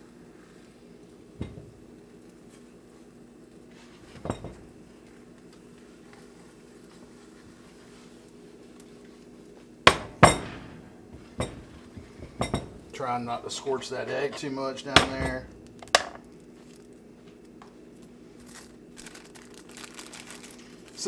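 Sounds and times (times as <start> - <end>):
utensil knocking on skillet: 9.9 - 13.0, 14.3 - 16.2.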